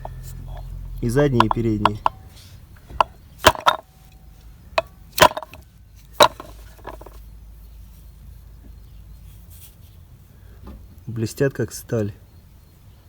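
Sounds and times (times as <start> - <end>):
brake pads knocking: 0.0 - 7.3.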